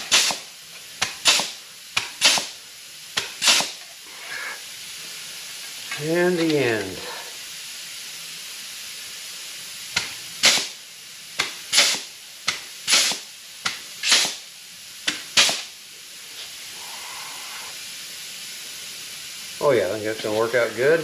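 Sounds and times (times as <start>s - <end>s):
air tool snapping: 0.0s - 2.6s, 3.2s - 4.0s, 10.0s - 10.8s, 11.4s - 15.8s
air exhaust hiss: 0.0s - 21.0s.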